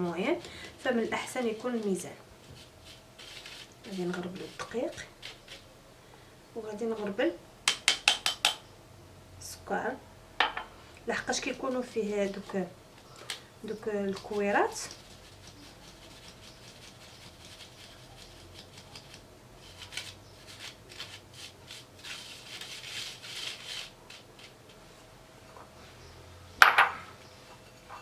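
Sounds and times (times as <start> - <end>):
sugar sifted through mesh sieve: 0.0 - 5.8, 11.1 - 25.2.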